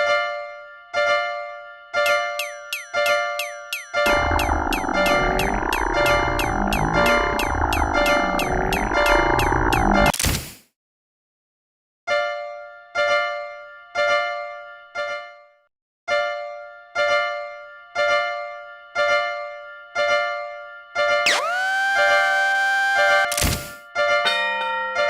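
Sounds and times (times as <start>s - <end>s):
cartoon warning bell ding: 2.1s - 4.2s
rising tone: 3.8s - 10.1s, 21.3s - 23.3s.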